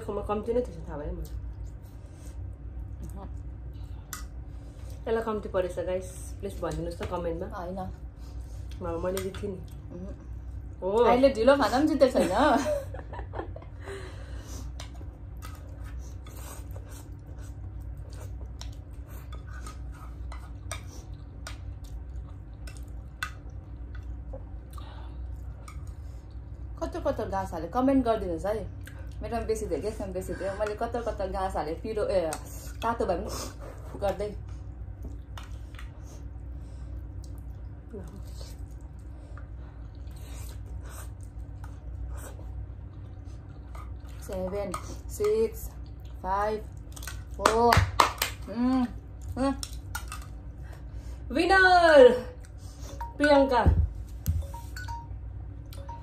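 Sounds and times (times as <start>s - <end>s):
steady low hum: 0.0s - 56.0s
people chewing food: 6.5s - 12.0s, 12.7s - 26.8s, 28.7s - 31.4s, 32.0s - 51.2s
low hum: 48.4s - 56.0s.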